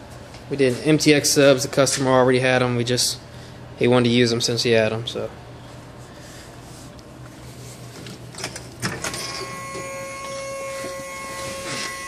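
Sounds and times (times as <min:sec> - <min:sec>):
electric motor whine: 0:09.1 - 0:12.0.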